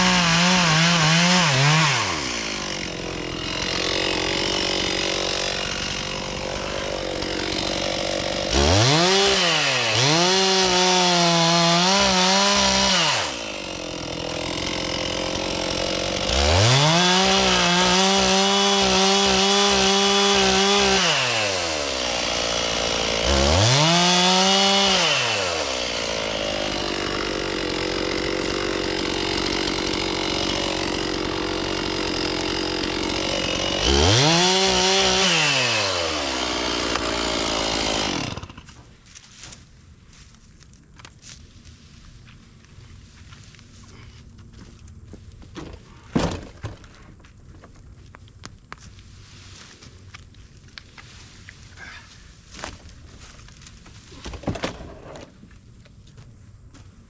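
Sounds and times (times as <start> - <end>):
chainsaw idling and revving: 0.0 - 38.8.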